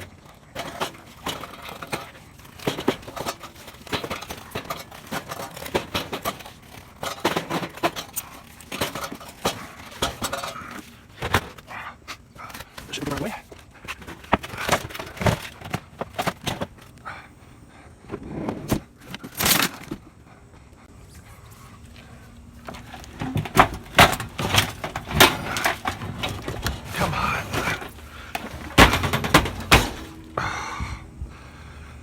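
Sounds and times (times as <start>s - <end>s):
metal clanks and bangs: 0.5s - 11.7s, 22.6s - 31.5s
scrap scraping: 21.1s - 30.4s.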